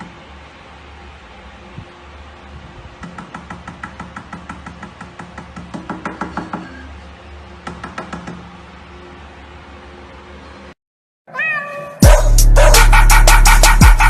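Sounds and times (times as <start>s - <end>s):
rapid tapping: 3.0s - 6.6s.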